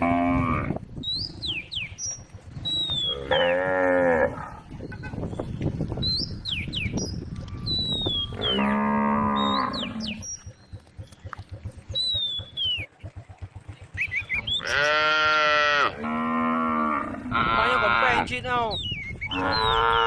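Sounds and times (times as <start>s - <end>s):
cows mooing: 0.0s - 1.6s, 2.6s - 4.8s, 7.5s - 10.4s, 14.5s - 18.3s, 19.3s - 20.0s.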